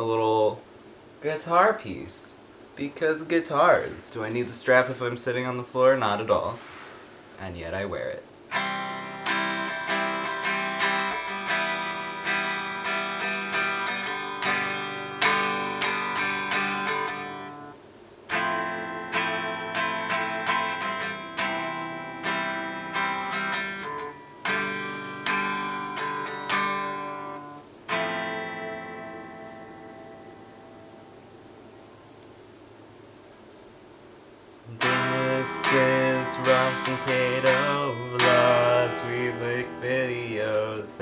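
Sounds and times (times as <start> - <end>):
guitar chords ringing: 8.4 - 32.2, 34.7 - 41.0.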